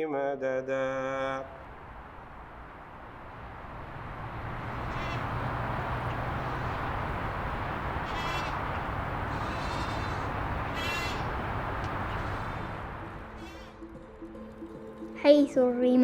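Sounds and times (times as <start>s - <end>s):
steady rushing noise: 0.9s - 14.0s
short bird calls: 4.7s - 13.8s.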